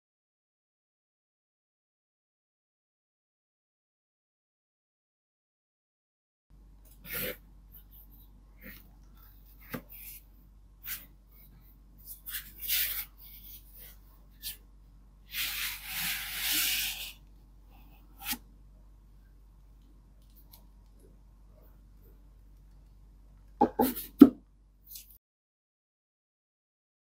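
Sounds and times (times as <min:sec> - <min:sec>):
rubbing and scraping packaging: 0:12.0 - 0:14.6, 0:15.3 - 0:17.2
long sliding rub: 0:15.3 - 0:17.2.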